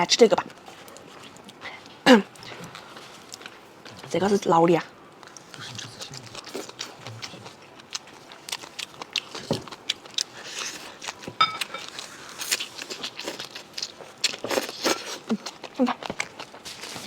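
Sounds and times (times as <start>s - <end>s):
chewing with wet mouth clicks: 0.3s - 4.1s, 5.2s - 16.7s.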